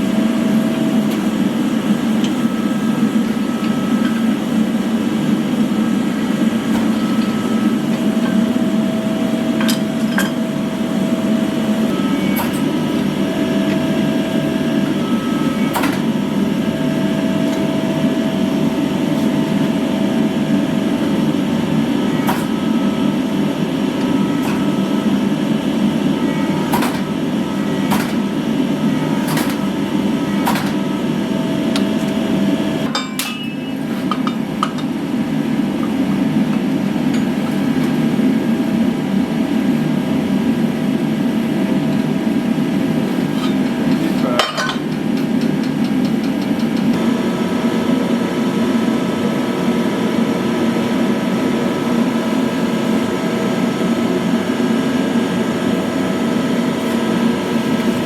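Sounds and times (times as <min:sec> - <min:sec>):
workshop machine roar: 0:00.0 - 0:58.0
hammer striking metal: 0:32.9 - 0:34.8.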